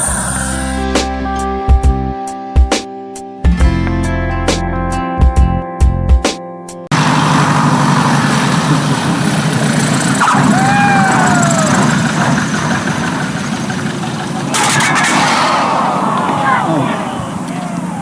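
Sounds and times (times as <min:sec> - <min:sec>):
guitar music: 0:00.6 - 0:06.8
airplane engine running: 0:06.9 - 0:18.0.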